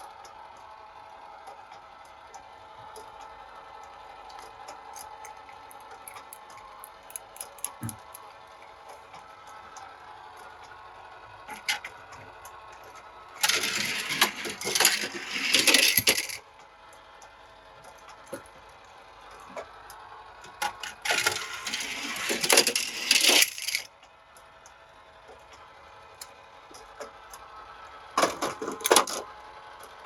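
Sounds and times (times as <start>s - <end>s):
toy cars clattering: 5.0s - 8.3s, 11.5s - 11.9s, 13.4s - 16.4s, 20.6s - 23.9s, 28.2s - 29.2s
sharp clicks: 6.1s - 8.2s.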